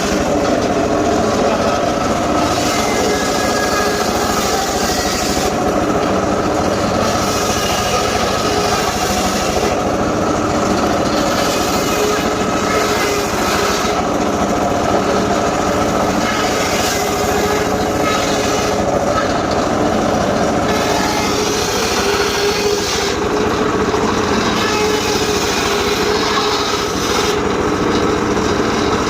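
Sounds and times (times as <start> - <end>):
engine-driven saw cutting wood: 0.0 - 29.0.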